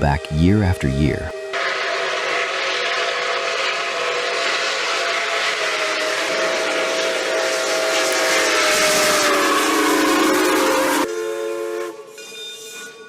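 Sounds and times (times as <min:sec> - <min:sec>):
steam locomotive whistle: 0:00.0 - 0:13.0
steam hissing: 0:01.6 - 0:11.1.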